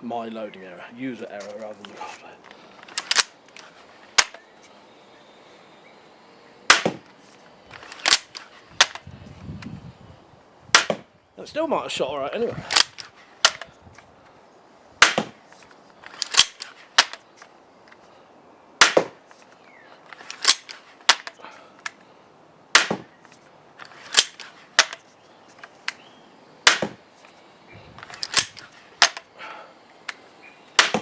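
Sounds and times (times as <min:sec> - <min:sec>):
crossbow string snapping: 0:02.5 - 0:04.4, 0:06.7 - 0:07.1, 0:07.7 - 0:09.7, 0:12.7 - 0:13.7, 0:16.0 - 0:17.2, 0:20.1 - 0:22.0, 0:23.8 - 0:25.0, 0:26.7 - 0:27.0, 0:28.0 - 0:29.3, 0:30.8 - 0:31.0
cocking lever clacks: 0:02.8 - 0:03.6, 0:28.0 - 0:29.3.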